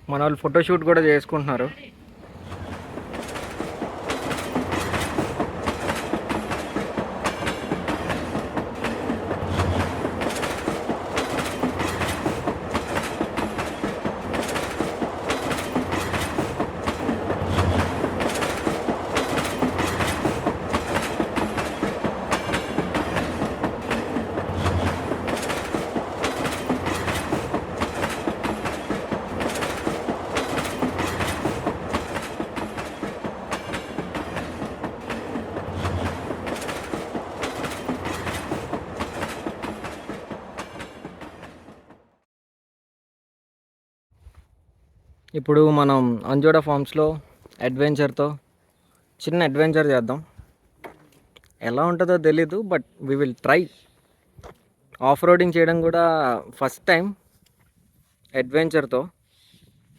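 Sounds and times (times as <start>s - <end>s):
train wheels clattering over rails: 2.3s - 42.1s.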